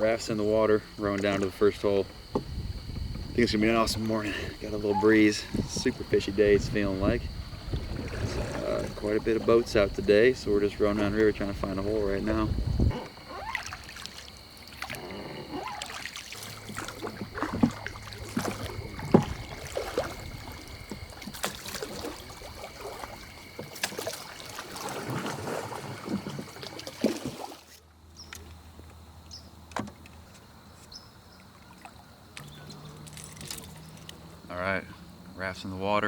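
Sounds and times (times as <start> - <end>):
oars splashing and knocking: 0.4 - 28.6.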